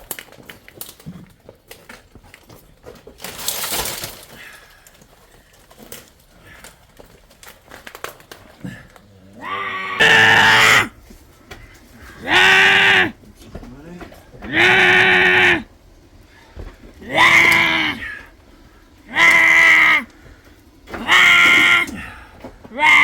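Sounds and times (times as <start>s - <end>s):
noisy rustle: 3.1s - 23.0s
livestock bleating: 9.4s - 11.0s, 12.0s - 13.2s, 14.4s - 15.7s, 17.0s - 18.2s, 19.1s - 20.1s, 21.0s - 23.0s.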